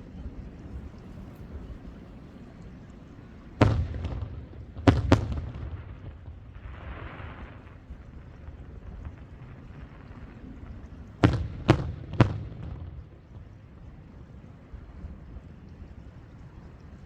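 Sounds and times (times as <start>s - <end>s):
fireworks bursting: 3.6s - 13.6s.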